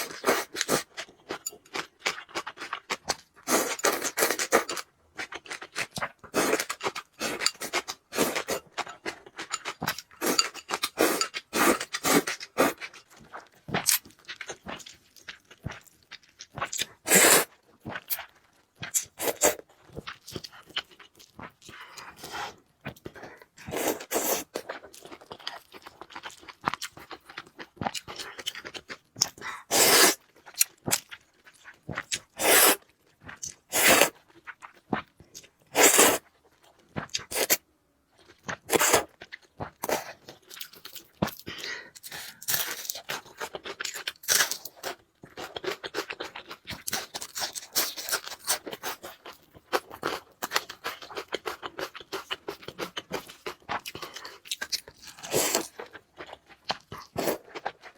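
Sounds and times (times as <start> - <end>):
person eating noodles: 0.0 - 14.1, 16.9 - 17.5, 23.6 - 27.3, 28.0 - 31.1, 32.0 - 32.9, 33.5 - 34.6, 35.7 - 36.3, 37.2 - 37.6, 38.5 - 56.4.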